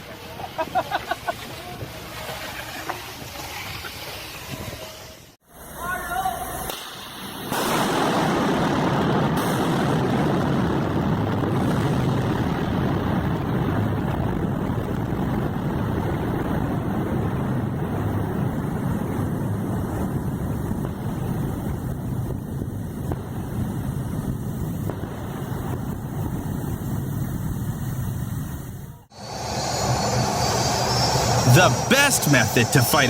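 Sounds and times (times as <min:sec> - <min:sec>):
rushing noise: 0:29.1 - 0:33.0.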